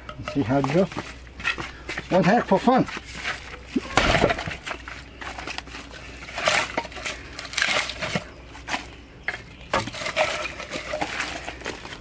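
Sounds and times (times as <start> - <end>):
axe scraping wood: 2.6 - 12.0.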